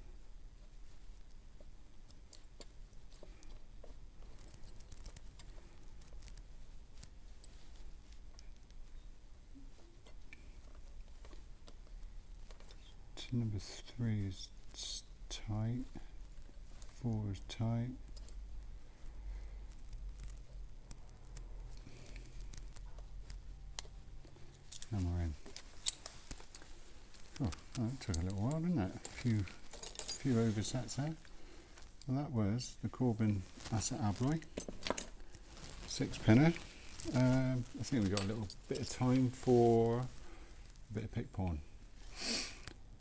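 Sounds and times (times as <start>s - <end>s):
lock pick clicking and scraping: 25.5s - 26.7s.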